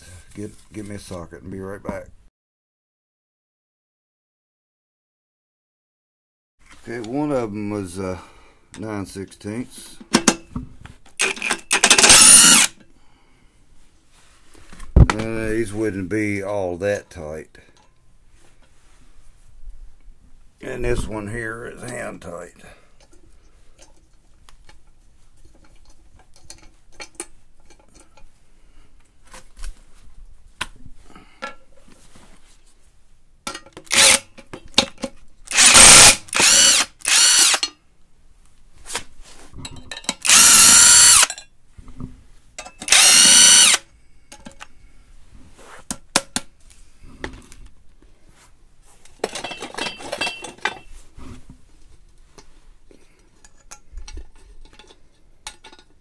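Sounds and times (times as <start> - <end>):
impact wrench bursts: 11.2 - 12.8, 33.9 - 34.3, 35.5 - 37.7, 40.2 - 41.3, 42.8 - 43.8.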